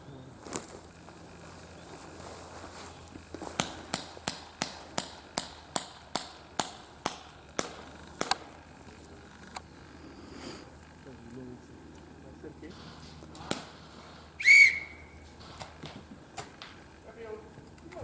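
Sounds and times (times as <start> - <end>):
airsoft gun shots: 3.6 - 8.6, 13.3 - 16.6.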